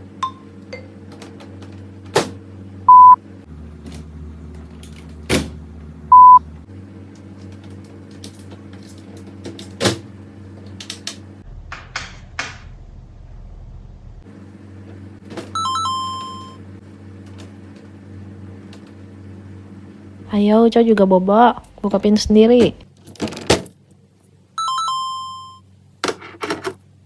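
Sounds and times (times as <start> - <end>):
steady low hum: 0.0 - 9.3, 14.2 - 24.5
short loud beeps: 2.9 - 3.2, 6.1 - 6.4.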